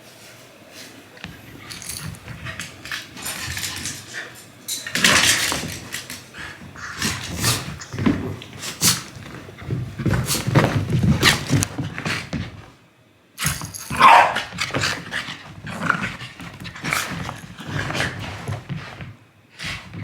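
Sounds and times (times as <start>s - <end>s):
dog high cry: 13.9s - 14.5s.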